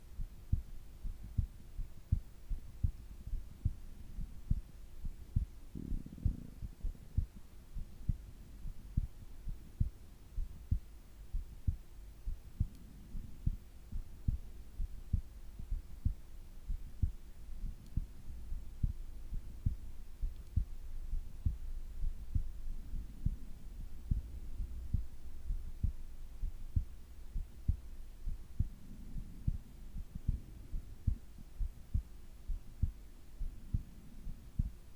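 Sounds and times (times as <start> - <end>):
faint hum: 0.0 - 34.9
heartbeat thumps: 0.0 - 34.9
soft breathing: 28.3 - 31.3, 33.4 - 34.8.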